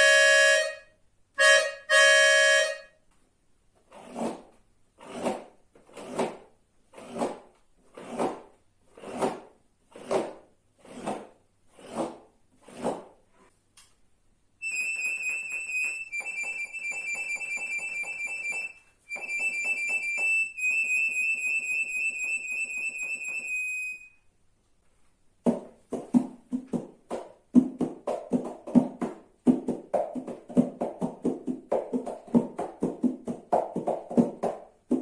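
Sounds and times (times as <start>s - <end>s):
accordion bellows swells: 0.0s - 2.9s
rapid high accordion notes: 0.0s - 2.9s.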